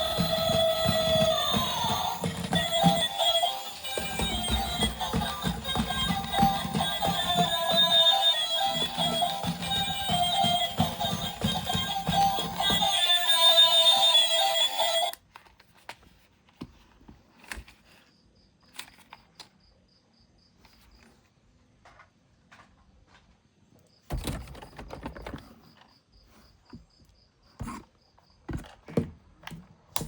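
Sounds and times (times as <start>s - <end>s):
objects clicking and knocking: 0.0s - 14.2s.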